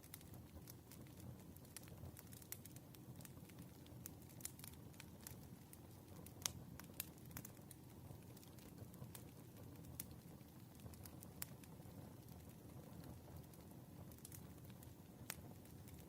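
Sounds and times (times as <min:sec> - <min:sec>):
low rumble of burning logs: 0:00.0 - 0:16.0
wood fire crackling: 0:00.0 - 0:16.0.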